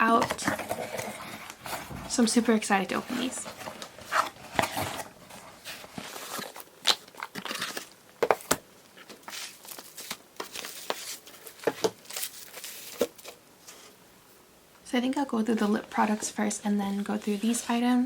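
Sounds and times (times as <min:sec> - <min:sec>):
packaging crinkling and rustling: 0:00.0 - 0:13.9.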